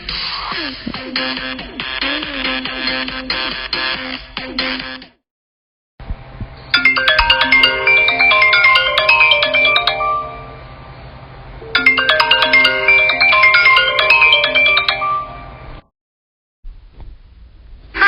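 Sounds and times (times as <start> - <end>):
electronic ringtone melody: 6.8 - 10.7, 11.6 - 15.8.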